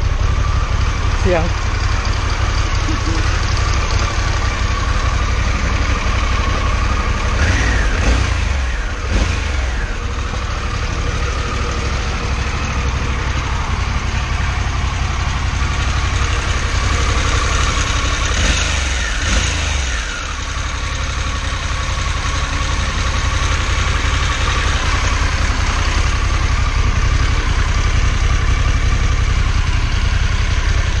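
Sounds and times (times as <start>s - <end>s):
motorcycle engine idling and revving: 0.0s - 31.0s.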